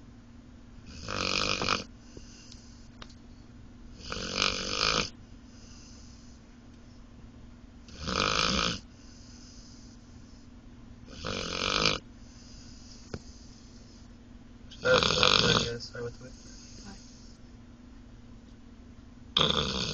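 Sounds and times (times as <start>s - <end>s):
dog snoring: 0.8s - 2.9s, 3.9s - 6.4s, 7.8s - 14.1s, 14.7s - 17.4s, 19.3s - 19.9s.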